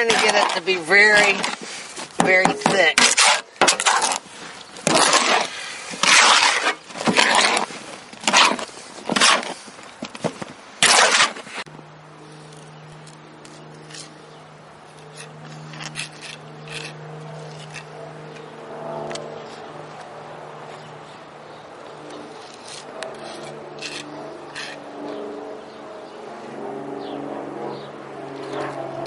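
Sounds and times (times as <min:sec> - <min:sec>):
trowel scraping mortar: 0:00.0 - 0:11.7, 0:15.0 - 0:18.0, 0:22.4 - 0:24.9.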